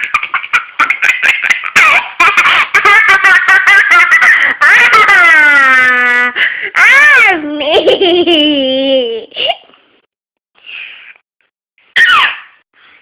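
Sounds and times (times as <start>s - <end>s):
young child squealing: 11.9s - 12.6s.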